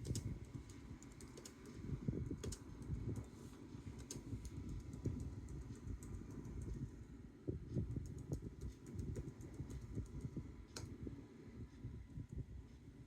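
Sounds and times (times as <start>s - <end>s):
typing on computer keyboard: 0.0s - 3.3s, 4.0s - 6.8s, 7.9s - 10.3s.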